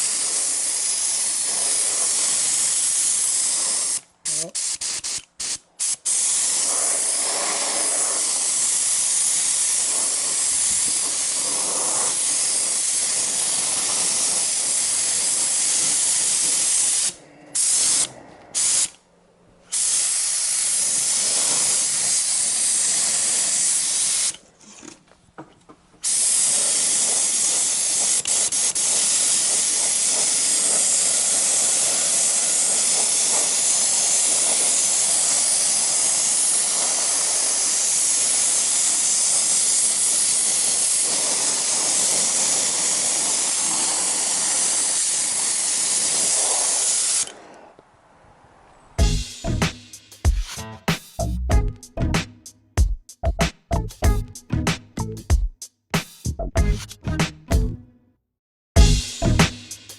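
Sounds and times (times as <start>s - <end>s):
paint spray gun hissing: 0.0s - 19.0s, 19.7s - 24.4s, 26.0s - 47.3s, 58.8s - 59.9s.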